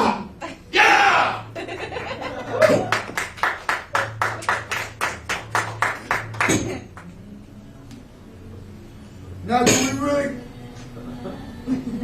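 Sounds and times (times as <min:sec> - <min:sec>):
hand claps in quick rhythm: 0:02.6 - 0:07.1.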